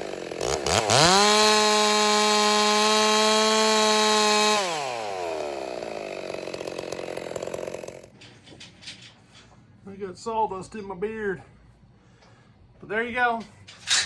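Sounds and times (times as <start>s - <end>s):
chainsaw at full throttle: 0.0s - 8.1s.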